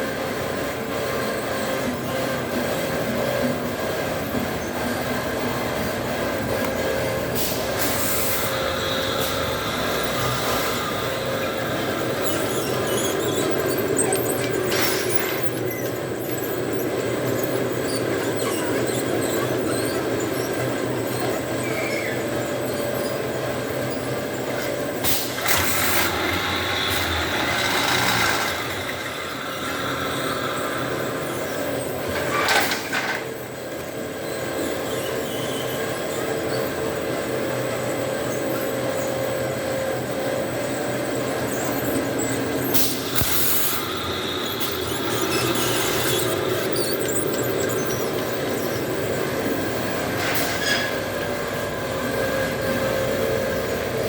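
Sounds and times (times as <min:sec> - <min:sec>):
extrusion machine humming: 0:04.0 - 0:33.0, 0:40.0 - 0:54.0.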